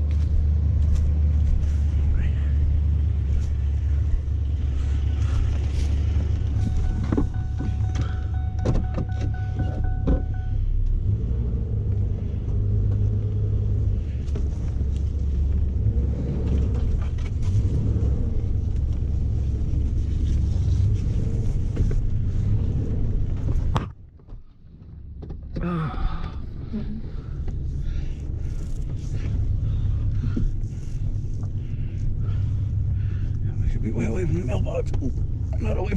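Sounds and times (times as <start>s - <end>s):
truck engine rumbling: 0.0s - 35.9s
faint steady tone: 6.0s - 11.0s.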